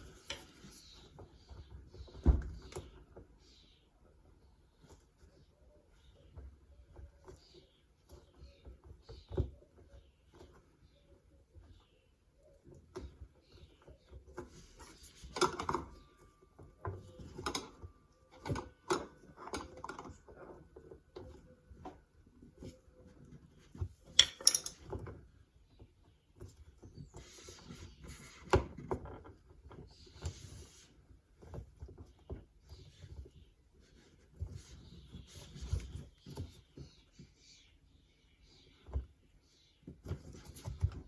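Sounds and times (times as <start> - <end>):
clicks knocks and rattles of parts: 13.8 - 22.0, 23.3 - 25.4.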